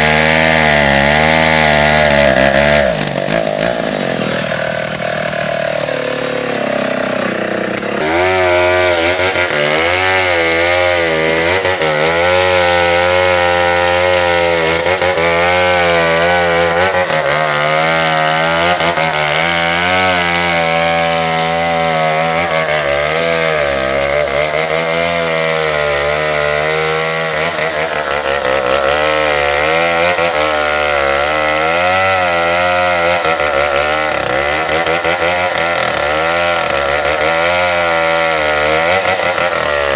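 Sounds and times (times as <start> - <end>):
chainsaw cutting hardwood: 0.0 - 39.9.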